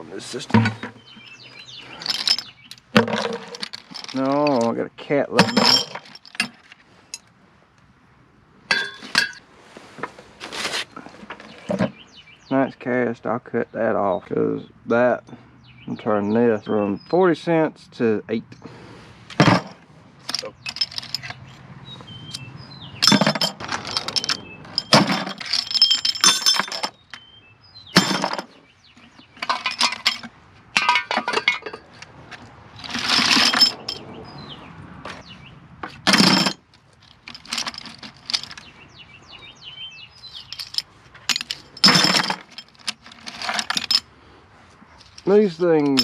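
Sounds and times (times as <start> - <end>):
scrap metal clattering: 0.4 - 4.7, 5.4 - 7.2, 8.7 - 12.0, 19.3 - 21.5, 22.3 - 27.0, 28.0 - 34.2, 35.9 - 38.7, 40.2 - 44.1.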